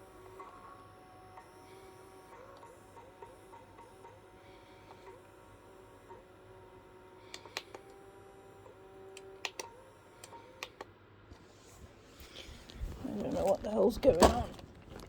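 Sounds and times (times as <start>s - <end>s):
faint whine shifting pitch: 0.0s - 14.1s
sharp plastic clicks: 9.2s - 10.9s.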